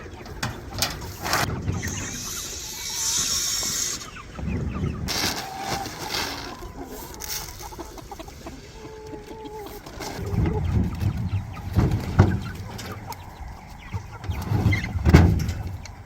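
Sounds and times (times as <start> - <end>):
chickens clucking: 0.0 - 16.0
rustling hiss: 0.4 - 4.4.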